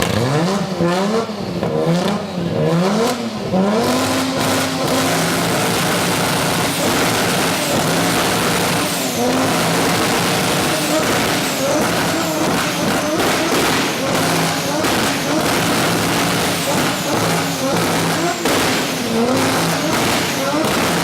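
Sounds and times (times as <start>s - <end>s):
car engine revving loud exhaust: 0.0s - 21.0s.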